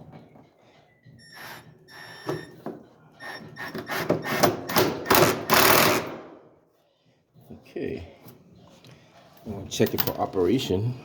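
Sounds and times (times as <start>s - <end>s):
cordless drill driving screw: 3.2s - 6.1s.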